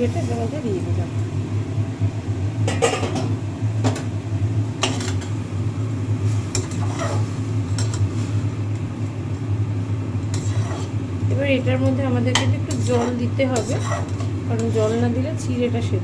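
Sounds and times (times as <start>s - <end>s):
steady low hum: 0.0s - 16.0s
spatula knocking and scraping pan: 4.8s - 5.3s, 6.5s - 8.1s, 10.3s - 11.0s, 11.8s - 15.2s.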